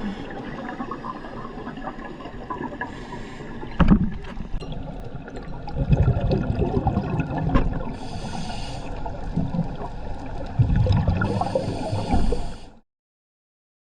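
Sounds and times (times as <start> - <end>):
gurgling exhaled bubbles: 0.0 - 12.7
regulator inhalation hiss: 8.0 - 9.1, 11.2 - 12.8.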